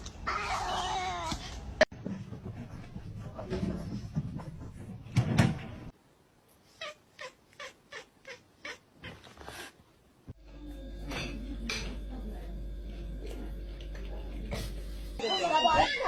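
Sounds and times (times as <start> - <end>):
cat meowing: 6.8 - 9.3.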